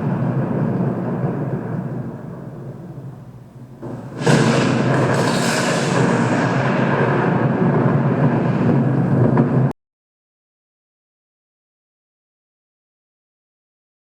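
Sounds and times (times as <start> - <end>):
loud thunderclap: 0.0 - 9.8
low thunder rumble: 0.0 - 9.8.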